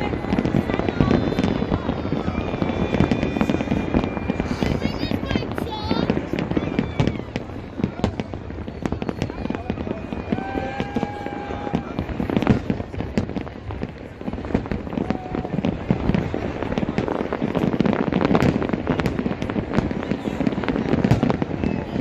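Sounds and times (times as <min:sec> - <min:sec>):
fireworks bangs and crackles: 0:00.0 - 0:22.0.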